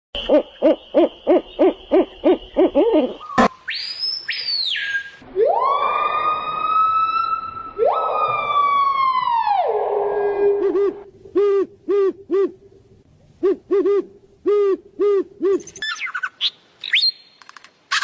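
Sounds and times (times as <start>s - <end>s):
hoot-like calls: 0.2s - 3.5s, 10.2s - 12.6s, 13.4s - 15.7s
siren-like wail: 5.2s - 11.1s.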